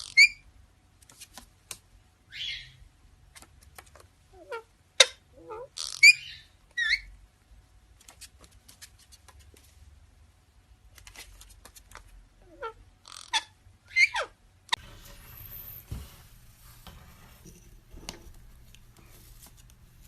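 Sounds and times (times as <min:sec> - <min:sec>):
parrot squeaky calls: 0:00.0 - 0:00.4, 0:02.3 - 0:02.8, 0:04.4 - 0:07.1, 0:12.4 - 0:14.4.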